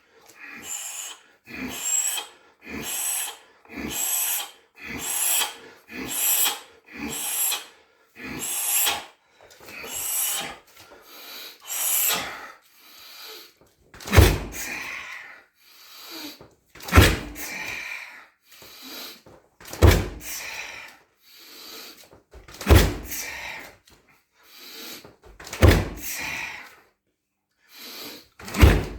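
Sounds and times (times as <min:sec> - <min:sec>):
sharp hissing exhalations: 0:00.1 - 0:13.5, 0:18.6 - 0:19.2, 0:27.7 - 0:28.4
kicks thudding on heavy bag: 0:14.2 - 0:14.6, 0:17.0 - 0:17.4, 0:22.7 - 0:23.2, 0:25.6 - 0:26.0, 0:28.6 - 0:28.9.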